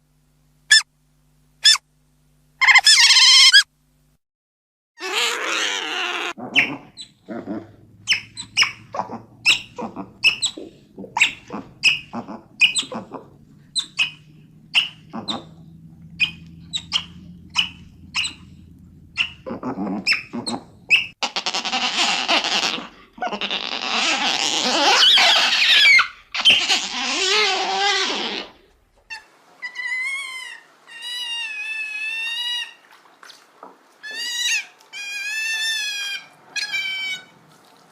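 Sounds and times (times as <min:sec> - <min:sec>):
otter high-pitched chirps: 0:02.6 - 0:03.6, 0:08.0 - 0:21.2
otter squealing call: 0:02.6 - 0:03.7, 0:05.0 - 0:32.8, 0:34.0 - 0:37.3.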